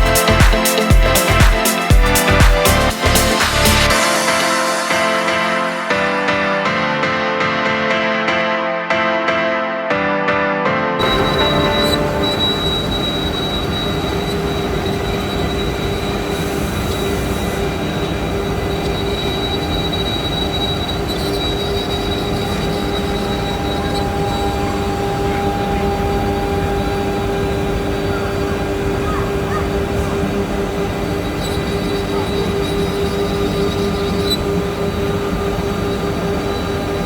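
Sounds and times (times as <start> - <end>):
milling machine spindle whine: 11.0 - 37.0.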